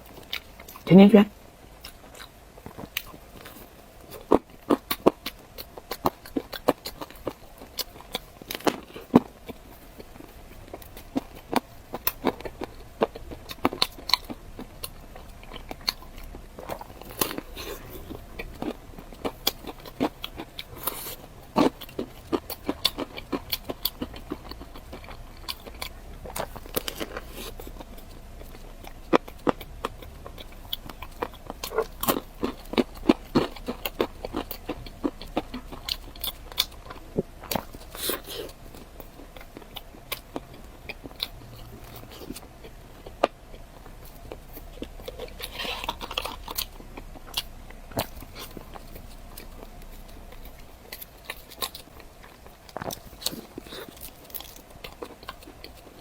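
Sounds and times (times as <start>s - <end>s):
biting and chewing crunchy food: 0.0s - 56.0s
wet mouth sounds: 13.1s - 34.8s.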